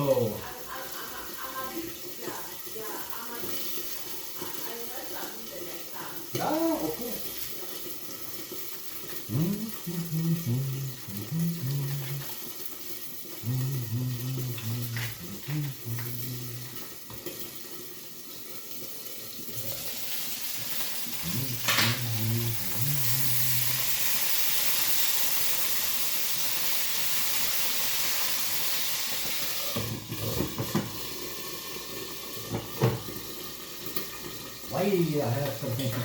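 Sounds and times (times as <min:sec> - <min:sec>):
tap running into a sink: 0:29.2 - 0:31.2, 0:32.4 - 0:34.4.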